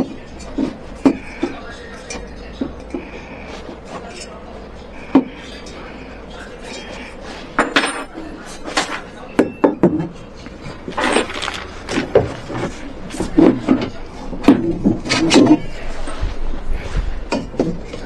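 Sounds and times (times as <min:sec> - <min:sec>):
hard objects knocking and clattering: 0:00.0 - 0:01.6, 0:07.6 - 0:15.7.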